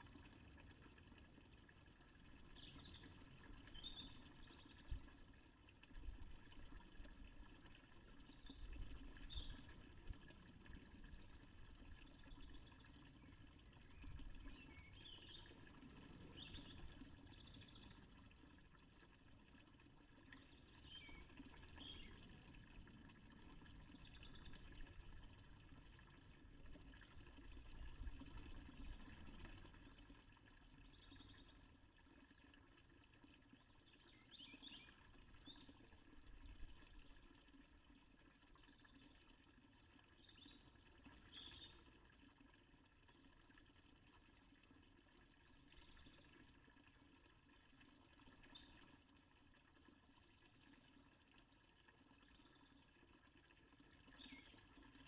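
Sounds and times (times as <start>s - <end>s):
fountain water splashing: 0.0s - 33.0s.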